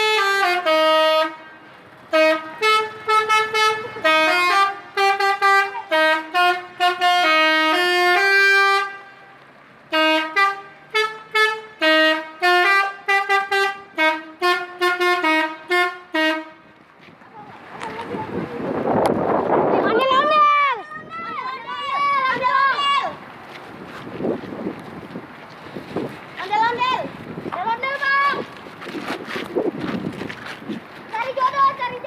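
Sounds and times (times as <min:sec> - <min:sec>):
musical bus air horn: 0:00.0 - 0:16.8.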